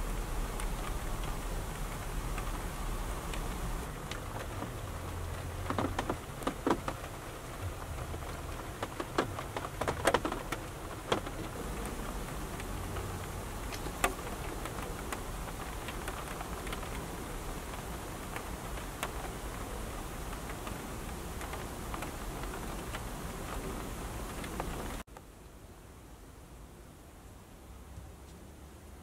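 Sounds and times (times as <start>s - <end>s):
low steady hum: 0.0s - 5.7s
raindrops tapping on roof: 0.0s - 25.3s.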